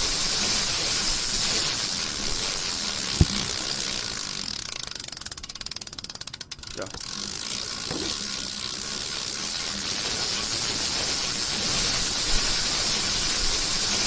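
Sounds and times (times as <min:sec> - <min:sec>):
bicycle chain whirring: 0:00.0 - 0:14.0.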